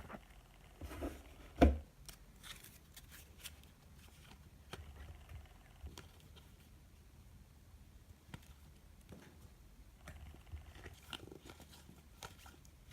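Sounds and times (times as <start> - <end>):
trading cards sliding and rustling: 2.0 - 5.3, 10.7 - 12.9.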